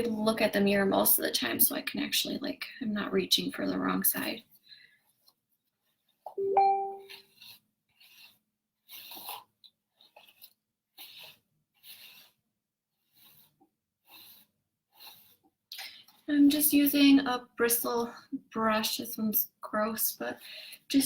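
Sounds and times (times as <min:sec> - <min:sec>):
hairbrush strokes through hair: 0:06.7 - 0:09.4, 0:10.2 - 0:15.4.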